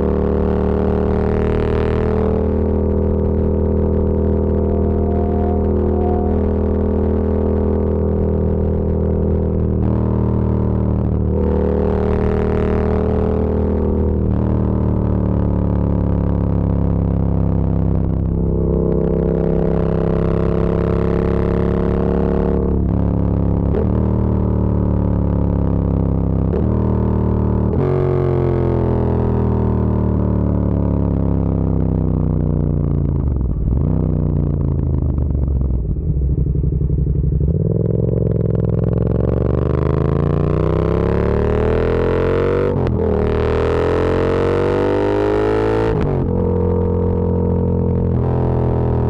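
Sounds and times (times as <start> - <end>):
motorcycle engine droning: 0.0 - 49.0.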